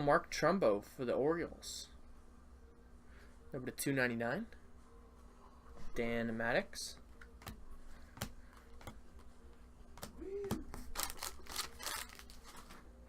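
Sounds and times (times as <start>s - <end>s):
cards rustling and sliding: 10.7s - 12.8s.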